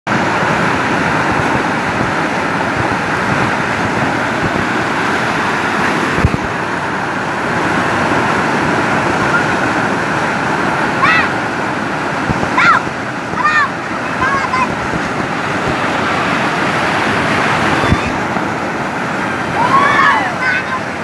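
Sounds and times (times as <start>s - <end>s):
water rushing: 0.1s - 21.0s.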